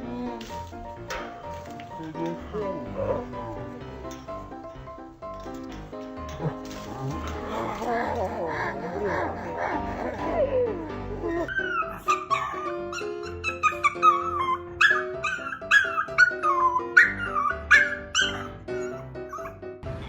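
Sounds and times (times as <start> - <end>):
background music: 0.0 - 20.0
dog whining and yipping: 11.3 - 19.6.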